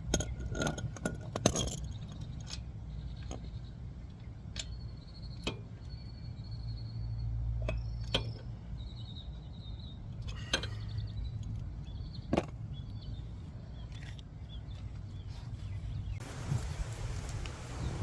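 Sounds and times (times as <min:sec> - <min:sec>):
faint high chirping: 0:04.6 - 0:13.2.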